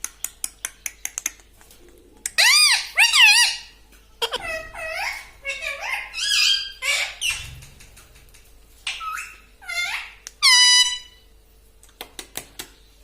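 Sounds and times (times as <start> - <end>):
parakeet harsh screech: 9.0 - 11.2.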